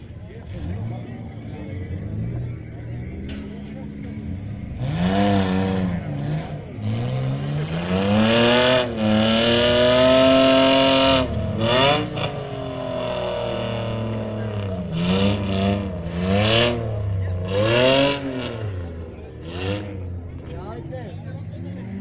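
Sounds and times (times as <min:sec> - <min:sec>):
engine revving hard: 0:03.9 - 0:20.2.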